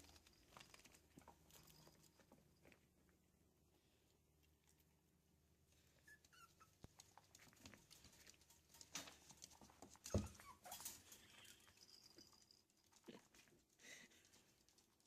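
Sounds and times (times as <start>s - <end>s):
puppies whimpering and squeaking: 5.9s - 6.9s, 9.8s - 12.2s.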